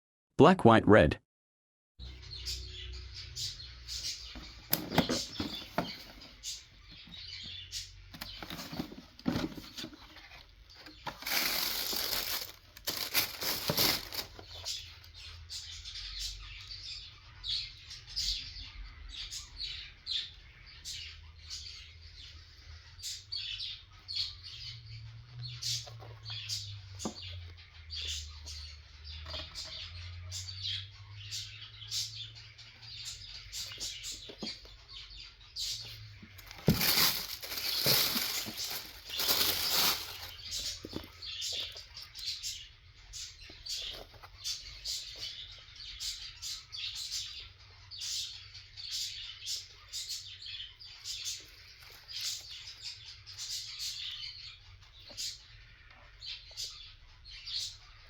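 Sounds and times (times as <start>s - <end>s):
cardboard box and paper rustling: 4.3s - 7.1s, 8.2s - 14.9s, 36.3s - 42.1s.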